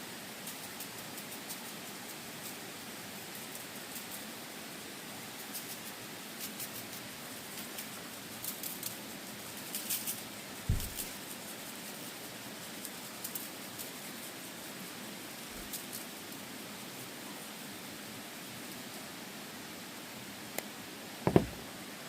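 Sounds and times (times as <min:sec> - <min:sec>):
steady hiss: 0:00.0 - 0:22.0
dull thump: 0:10.7 - 0:11.1, 0:21.3 - 0:21.7.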